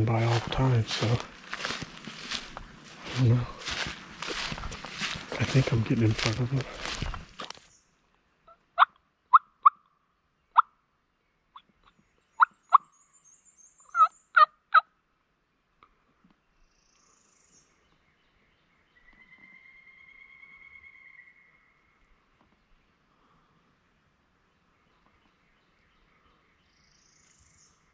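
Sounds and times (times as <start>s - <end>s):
faint small bird chirps: 11.5s - 14.5s
turkey clucking: 14.0s - 14.5s.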